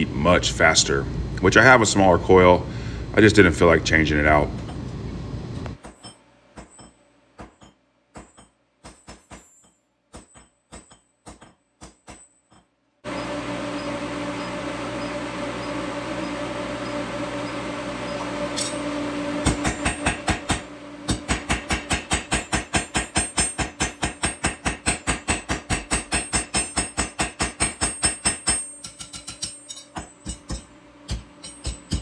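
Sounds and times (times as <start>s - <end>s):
hammer striking steel on anvil: 5.8s - 12.7s, 18.5s - 32.0s
induction forge humming: 13.0s - 25.3s, 26.0s - 32.0s.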